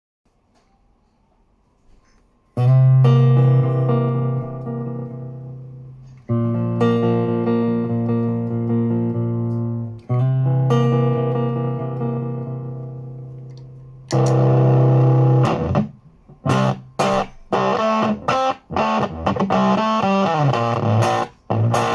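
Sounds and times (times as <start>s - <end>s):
guitar chord strummed and ringing: 2.6s - 21.9s.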